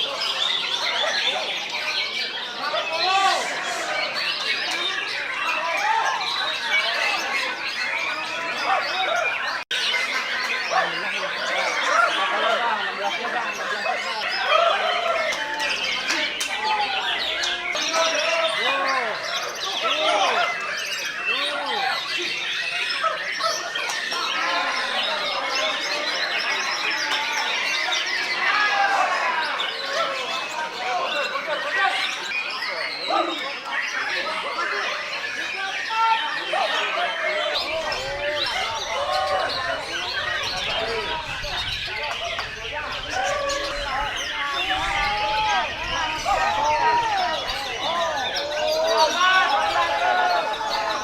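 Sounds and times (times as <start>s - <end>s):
songbirds singing: 0.0s - 51.0s.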